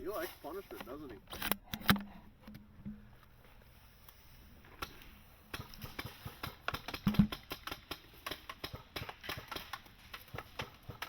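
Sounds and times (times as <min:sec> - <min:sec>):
airsoft guns firing: 0:04.8 - 0:11.0.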